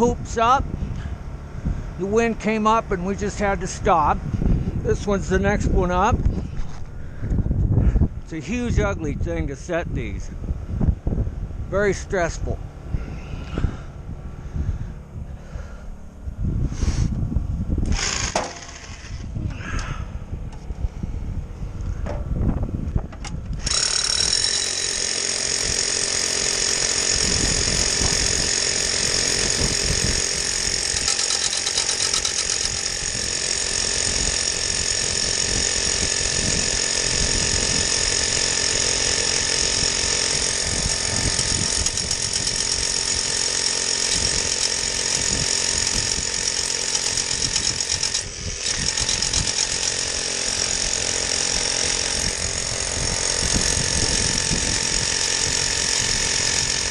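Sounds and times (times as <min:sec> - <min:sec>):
hammer drill boring into concrete: 0:17.8 - 0:19.4, 0:23.6 - 0:56.9.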